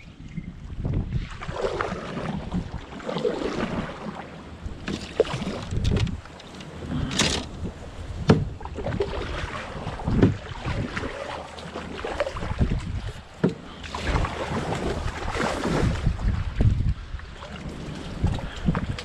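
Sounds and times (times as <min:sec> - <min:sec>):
wind buffeting microphone: 0:00.0 - 0:11.2, 0:11.9 - 0:19.0
water lapping against hull: 0:00.0 - 0:19.0
knocks against boat: 0:08.2 - 0:08.8, 0:10.0 - 0:10.5, 0:13.4 - 0:13.7.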